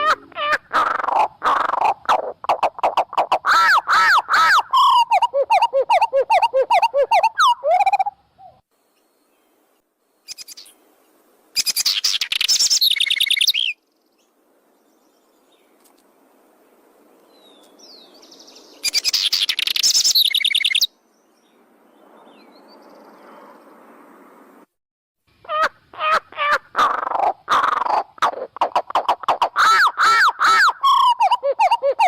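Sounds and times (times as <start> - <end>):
bird chattering bursts: 0.0 - 8.1, 11.6 - 13.8, 18.8 - 20.9, 26.5 - 32.0
birds calling: 0.0 - 8.6, 25.5 - 32.0.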